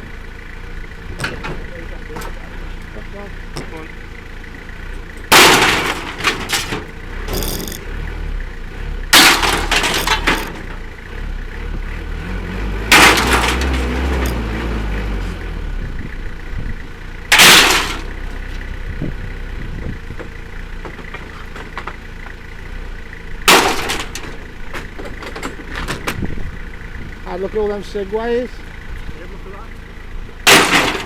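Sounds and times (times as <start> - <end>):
idling engine rumble: 0.0 - 31.0
scrap metal crashing onto pile: 5.3 - 7.8, 9.1 - 10.8, 12.9 - 14.4, 17.3 - 18.3, 23.5 - 26.0, 30.4 - 31.0.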